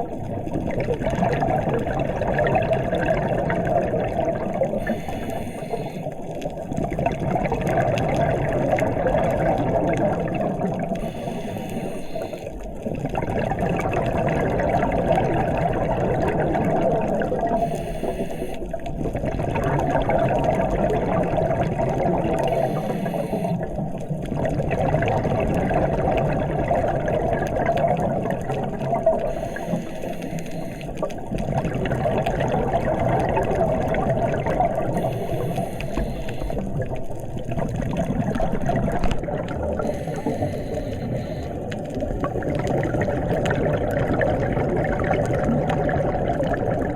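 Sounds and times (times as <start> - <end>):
exhaled air bubbling underwater: 0.0 - 46.9
diver breathing through regulator: 4.7 - 6.4, 11.0 - 12.8, 17.5 - 18.8, 22.4 - 23.8, 29.2 - 31.2, 34.9 - 36.9, 39.8 - 42.0.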